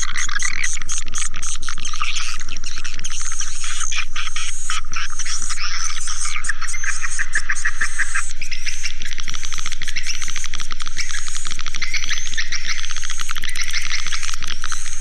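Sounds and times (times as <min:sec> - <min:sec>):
recorded bird twittering: 0:00.0 - 0:15.0
rapid clicks: 0:08.8 - 0:15.0.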